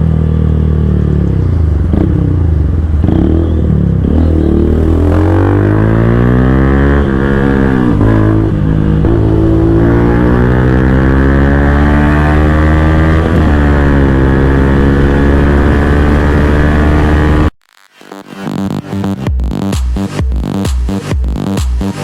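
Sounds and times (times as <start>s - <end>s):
motorcycle engine revving: 0.0s - 17.6s
electronic dance music: 17.8s - 22.0s.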